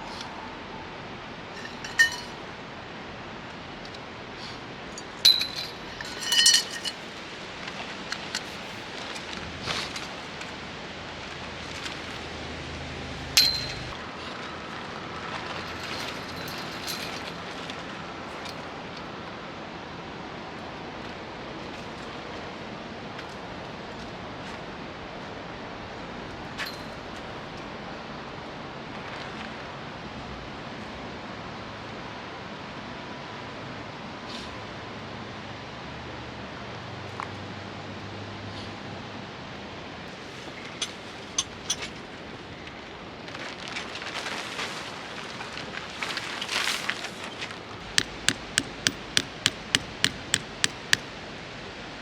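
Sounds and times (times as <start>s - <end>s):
hard gear pieces clinking: 1.6s - 2.4s, 5.0s - 7.1s, 40.8s - 41.9s, 47.8s - 51.2s.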